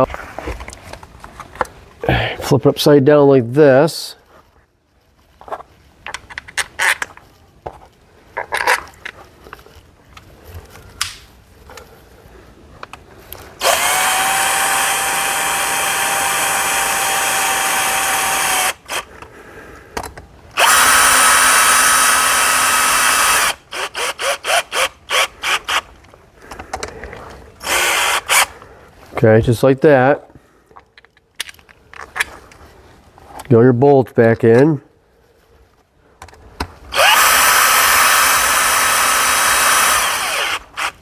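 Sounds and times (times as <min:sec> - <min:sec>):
power drill running: 0:13.6 - 0:19.1, 0:20.6 - 0:25.8, 0:27.6 - 0:28.5, 0:36.9 - 0:41.0.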